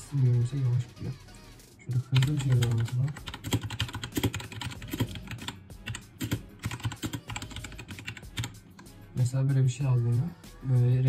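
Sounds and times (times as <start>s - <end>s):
fast typing on mechanical keyboard: 2.2s - 8.6s.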